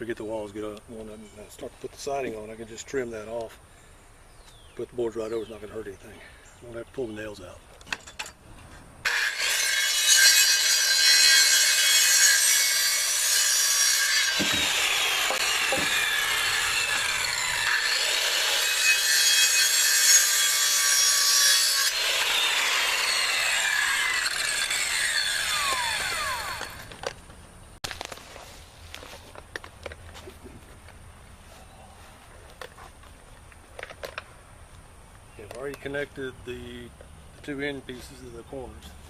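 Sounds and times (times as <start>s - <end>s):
electric saw cutting wood: 9.0s - 27.1s.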